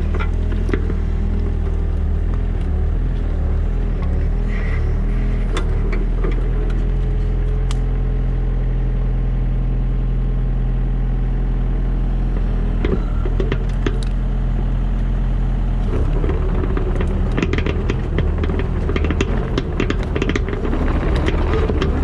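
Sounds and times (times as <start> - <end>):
diesel engine running: 0.0 - 22.0
metallic clanks and knocks: 16.0 - 22.0.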